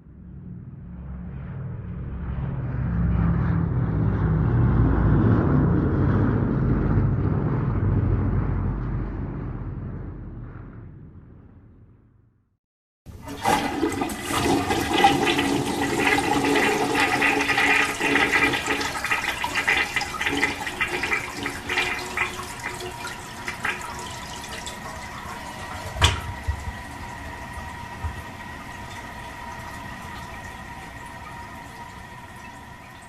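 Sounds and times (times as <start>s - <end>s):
low rumble: 0.0s - 12.6s
toilet flushing water rush: 13.1s - 33.0s.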